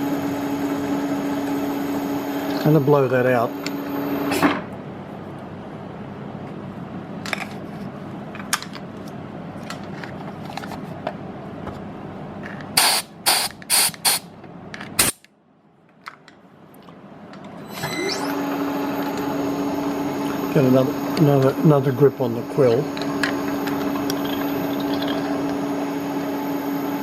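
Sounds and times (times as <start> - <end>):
milling machine noise: 0.0 - 4.4, 17.5 - 27.0
air blowgun hissing: 12.8 - 14.3
loud air blasts: 12.8 - 14.3, 15.0 - 15.2.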